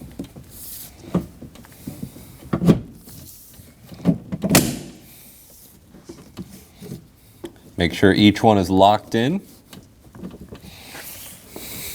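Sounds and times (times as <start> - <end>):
plastic clips snapping into place: 4.4 - 5.0.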